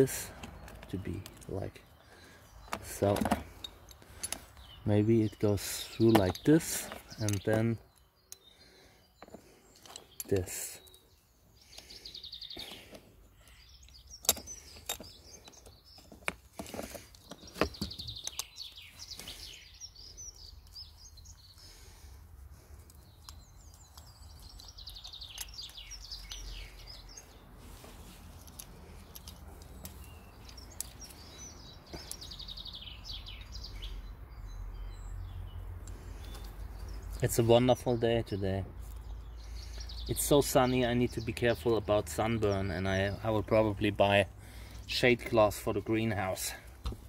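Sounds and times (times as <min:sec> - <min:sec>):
clicks of small parts handled: 0:00.4 - 0:01.6, 0:02.6 - 0:04.6, 0:06.1 - 0:08.5, 0:09.2 - 0:11.0, 0:12.6 - 0:19.5, 0:22.8 - 0:27.3, 0:28.2 - 0:32.4
songbird trilling: 0:23.0 - 0:27.5, 0:29.0 - 0:38.0.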